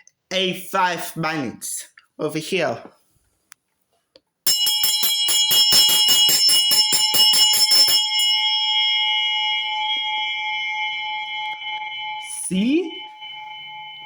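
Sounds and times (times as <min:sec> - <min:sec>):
handbell ringing: 0:04.5 - 0:09.7.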